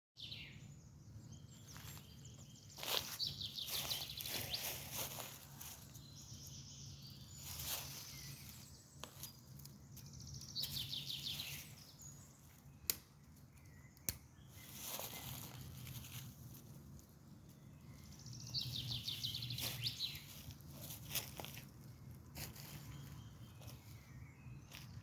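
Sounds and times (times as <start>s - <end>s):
birds chirping and trilling: 0.2s - 25.0s
wood fire crackling pops: 12.8s - 14.2s.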